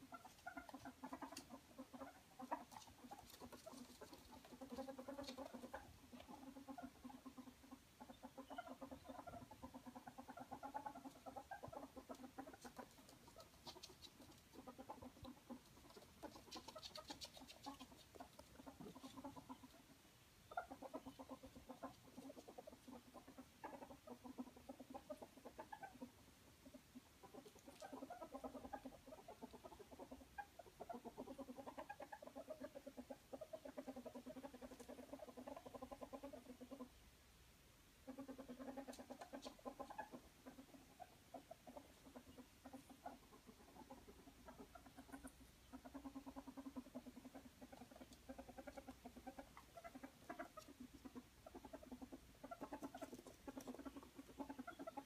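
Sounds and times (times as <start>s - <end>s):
ferrets clucking chatter: 0.0s - 36.9s, 38.1s - 55.0s.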